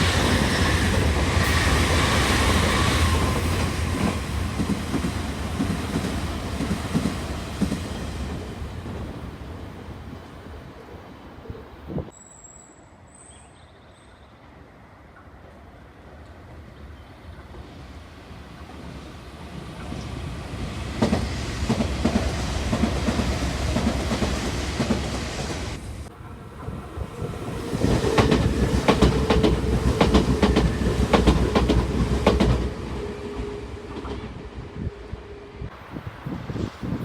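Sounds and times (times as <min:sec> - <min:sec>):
steady train whine: 0:00.0 - 0:12.1, 0:14.4 - 0:37.0
train wheels clacking: 0:20.9 - 0:25.8, 0:26.6 - 0:34.4.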